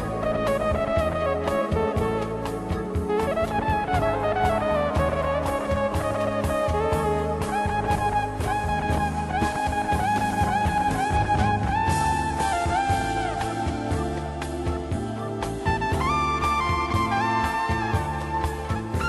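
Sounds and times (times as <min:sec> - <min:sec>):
drum kit beat: 0:00.0 - 0:19.0
jazzy tune with brass lead: 0:00.0 - 0:19.0.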